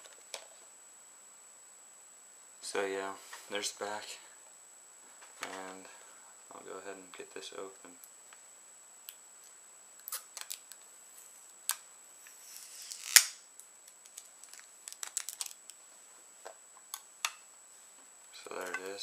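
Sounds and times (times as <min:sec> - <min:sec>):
box opening clicks and crackles: 0:10.0 - 0:10.8, 0:12.8 - 0:15.8.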